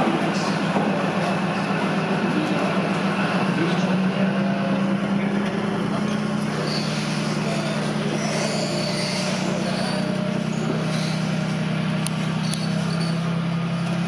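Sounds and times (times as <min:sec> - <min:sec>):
low mechanical drone: 0:00.0 - 0:14.0.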